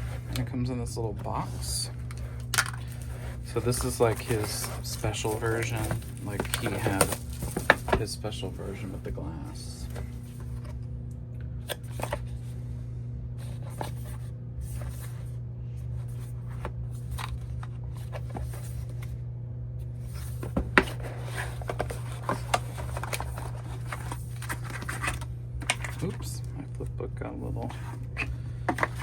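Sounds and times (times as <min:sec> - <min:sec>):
steady low hum: 0:00.0 - 0:29.0
cardboard clicks and rustles: 0:01.2 - 0:10.8, 0:16.0 - 0:19.2, 0:20.0 - 0:26.5, 0:27.6 - 0:29.0.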